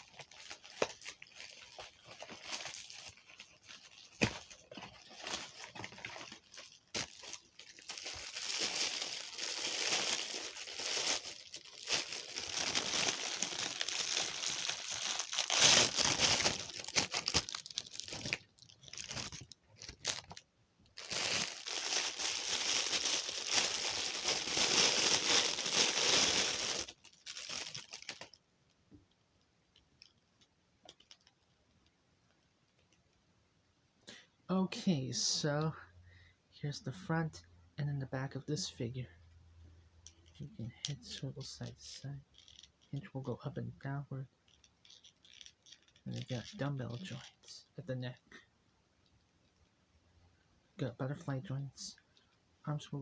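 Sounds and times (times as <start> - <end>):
paper packaging tearing and crumpling: 0.0 - 20.4, 21.0 - 28.3.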